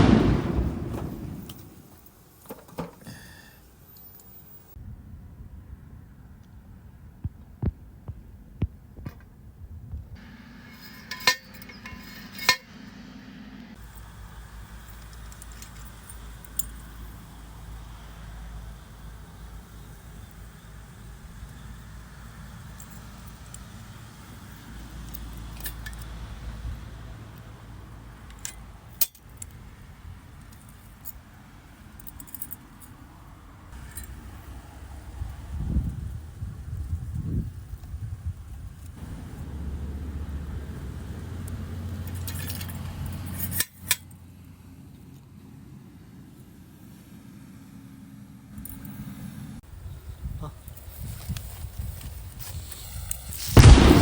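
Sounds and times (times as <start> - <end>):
ringing metallic strikes: 10.2 - 13.8
wind on microphone: 35.3 - 39.2.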